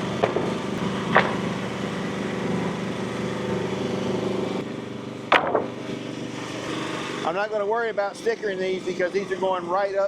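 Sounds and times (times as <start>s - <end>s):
sawmill engine running: 0.0s - 10.0s.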